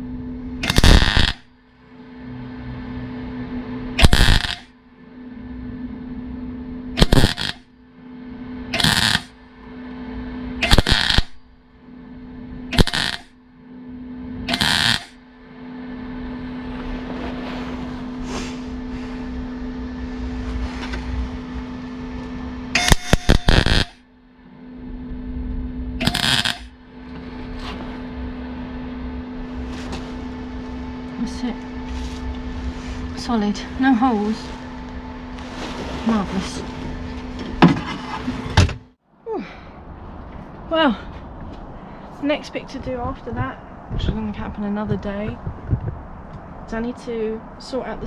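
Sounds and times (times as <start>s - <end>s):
welder humming: 0.0s - 46.8s
crackling weld bursts: 0.6s - 1.5s, 4.0s - 4.7s, 7.0s - 7.7s, 8.7s - 9.4s, 10.6s - 11.5s, 12.7s - 13.3s, 14.5s - 15.2s, 22.7s - 24.0s, 26.0s - 26.8s
short welding zaps: 0.6s - 1.5s, 4.0s - 4.7s, 7.0s - 7.6s, 8.7s - 9.3s, 10.6s - 11.4s, 12.7s - 13.3s, 14.5s - 15.2s, 22.8s - 24.0s, 26.0s - 26.7s.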